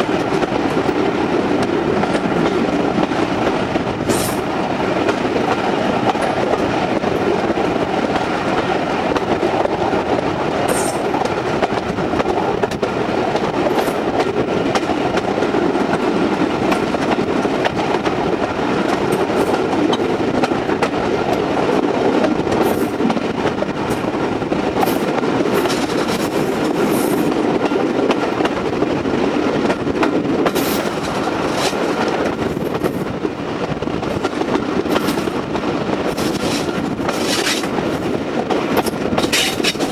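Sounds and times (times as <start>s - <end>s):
train wheels rumbling on rail: 0.0s - 39.9s
sharp clicks of track: 10.6s - 16.0s, 24.8s - 28.6s, 34.0s - 39.9s.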